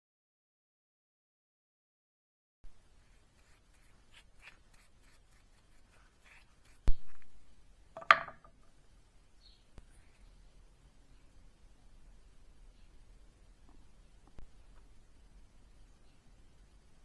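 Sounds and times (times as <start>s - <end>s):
quick rubbing strokes: 3.0s - 7.3s.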